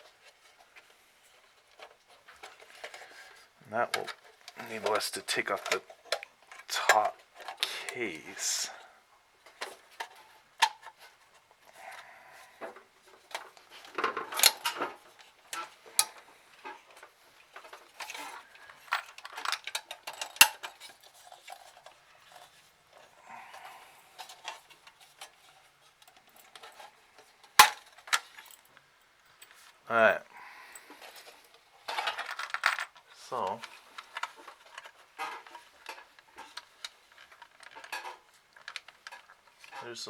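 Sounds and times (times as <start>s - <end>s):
metal clicks and clinks: 17.7s - 22.5s.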